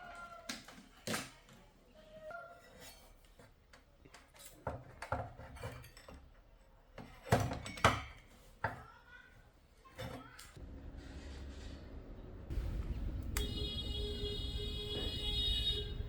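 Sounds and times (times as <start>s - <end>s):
hard objects knocking and clattering: 4.5s - 8.9s.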